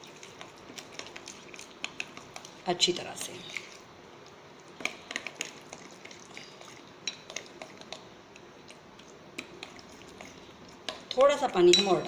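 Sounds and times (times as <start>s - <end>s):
spoon stirring batter in bowl: 0.0s - 12.0s
spoon clinking against bowl: 11.6s - 12.0s.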